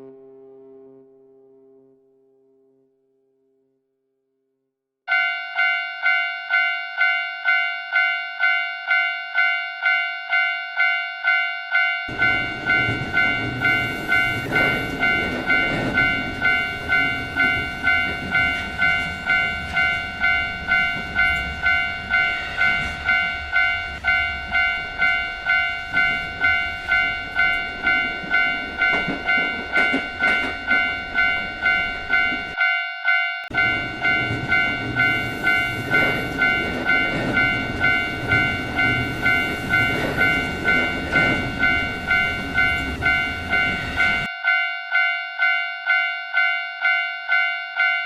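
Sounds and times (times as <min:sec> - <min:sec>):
level-crossing warning bell ringing: 0:05.1 - 0:48.0
passing train rumble: 0:12.1 - 0:32.6, 0:33.5 - 0:44.3.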